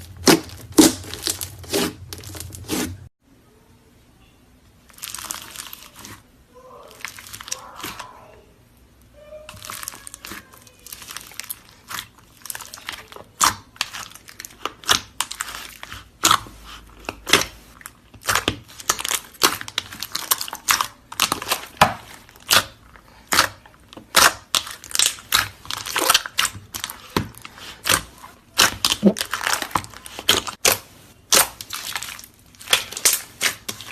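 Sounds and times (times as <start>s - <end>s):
slime crackling and popping: 0.0s - 2.9s, 4.9s - 6.2s, 6.9s - 8.0s, 9.5s - 33.9s.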